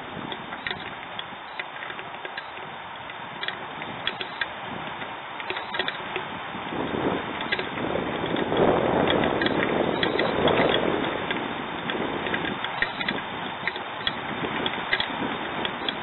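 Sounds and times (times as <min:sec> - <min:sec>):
steady rushing noise: 0:00.0 - 0:16.0
sharp ticks: 0:00.3 - 0:06.3, 0:07.4 - 0:16.0.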